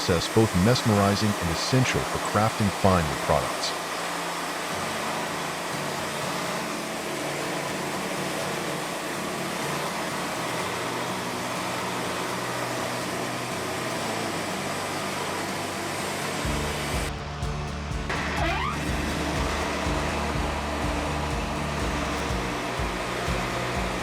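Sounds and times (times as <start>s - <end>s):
band saw cutting a log: 0.0s - 17.1s, 18.1s - 24.0s
deep engine hum: 16.4s - 24.0s.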